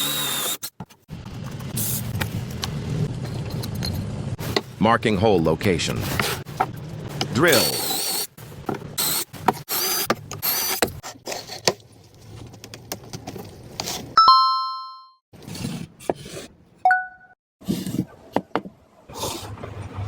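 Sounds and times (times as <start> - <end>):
sharp metallic ding: 14.2 - 15.1.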